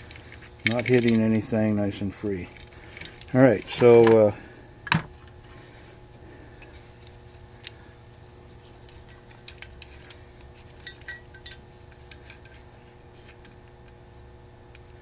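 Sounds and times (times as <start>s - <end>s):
small metal parts clicking: 0.0s - 1.4s, 8.8s - 12.6s.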